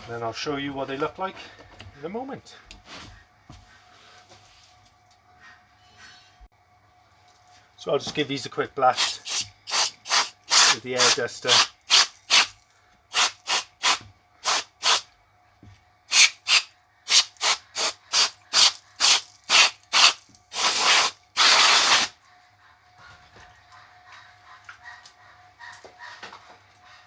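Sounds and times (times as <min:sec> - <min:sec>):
air duster hissing blasts: 0:08.9 - 0:15.1, 0:16.1 - 0:22.2.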